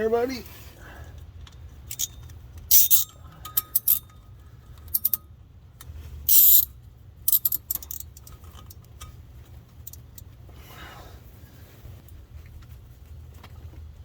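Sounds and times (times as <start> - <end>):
low steady rumble: 0.0 - 14.0
zip ties pulled tight: 2.7 - 3.0, 6.3 - 6.6.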